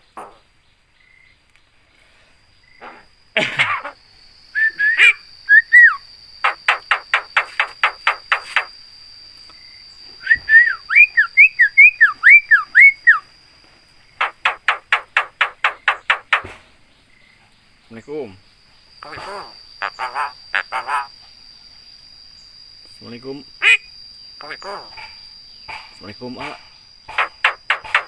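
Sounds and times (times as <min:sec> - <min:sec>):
myna bird calling: 0:02.7 - 0:04.0, 0:04.6 - 0:08.8, 0:14.2 - 0:17.2, 0:19.0 - 0:21.2, 0:23.6 - 0:25.2, 0:26.4 - 0:28.0
rapid sharp bird chattering: 0:03.7 - 0:04.0, 0:06.4 - 0:08.8, 0:14.2 - 0:16.6, 0:19.0 - 0:21.2, 0:23.6 - 0:25.2, 0:26.4 - 0:28.0
whistled bird notes: 0:04.5 - 0:07.0, 0:10.2 - 0:13.2
harsh rasping bird call: 0:04.7 - 0:08.7, 0:14.2 - 0:16.5, 0:19.0 - 0:21.2, 0:24.4 - 0:25.0, 0:27.1 - 0:28.0.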